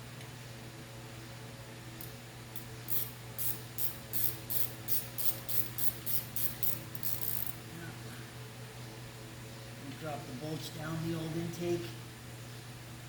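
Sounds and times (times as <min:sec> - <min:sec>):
steady low hum: 0:00.0 - 0:13.0
hand ratchet clicking: 0:02.0 - 0:07.6.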